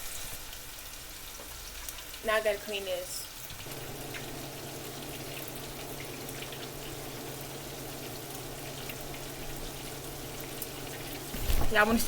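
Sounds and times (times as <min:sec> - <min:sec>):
water running from tap: 0:00.0 - 0:12.0.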